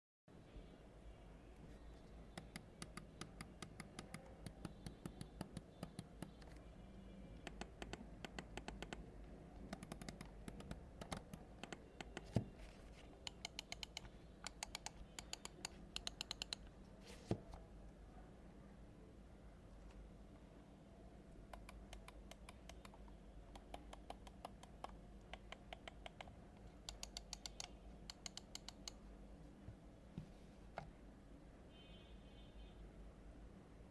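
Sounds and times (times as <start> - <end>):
mouse buttons clicking: 2.3 - 6.6, 7.4 - 12.5, 13.2 - 16.7, 21.4 - 29.0.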